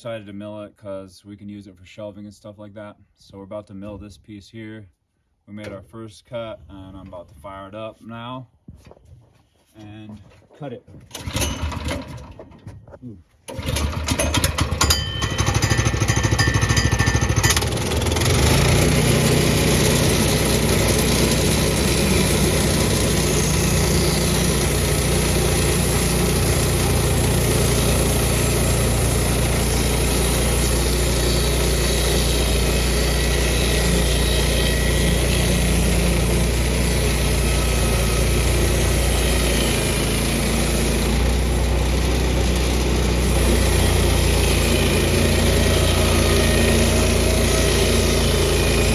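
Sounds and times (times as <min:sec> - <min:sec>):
sawmill engine running: 0:11.1 - 0:12.4, 0:13.5 - 0:48.9.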